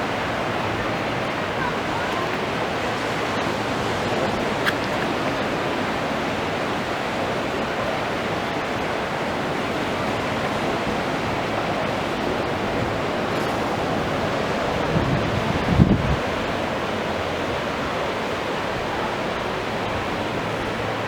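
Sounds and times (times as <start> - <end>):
rushing water and wind: 0.0 - 21.0.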